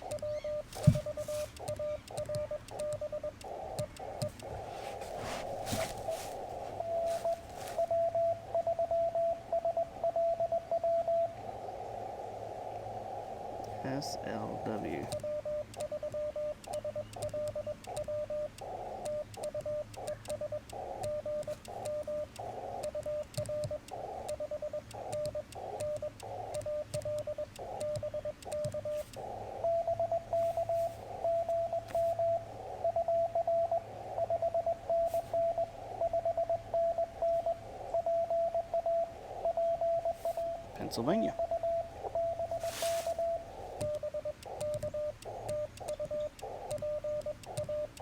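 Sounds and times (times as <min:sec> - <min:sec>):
morse code tones: 0:00.0 - 0:11.4, 0:13.6 - 0:48.0
radio band hiss: 0:00.7 - 0:02.2, 0:03.5 - 0:07.9, 0:13.7 - 0:15.2, 0:40.1 - 0:41.4, 0:42.5 - 0:45.7.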